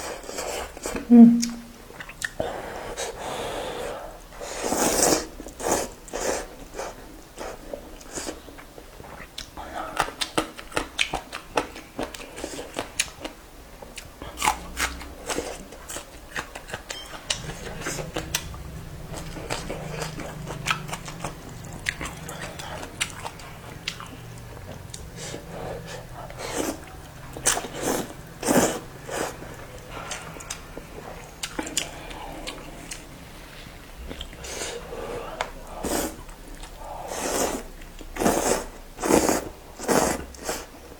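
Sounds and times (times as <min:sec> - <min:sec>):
person chewing crunchy food: 0:08.1 - 0:33.2.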